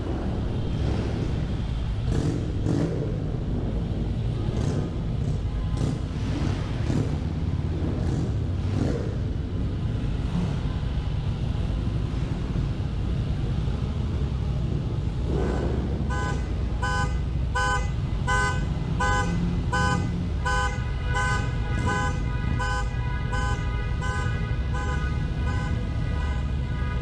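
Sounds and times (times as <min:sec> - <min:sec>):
motorcycle engines idling: 0:00.0 - 0:27.0
car alarm pulsing: 0:16.1 - 0:24.2.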